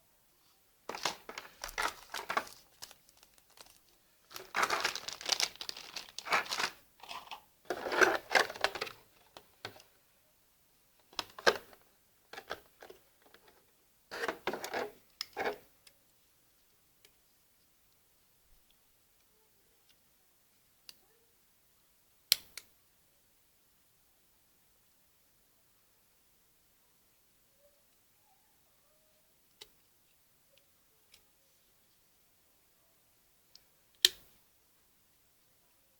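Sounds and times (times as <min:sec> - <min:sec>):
packaging crinkling and rustling: 0:00.9 - 0:09.8.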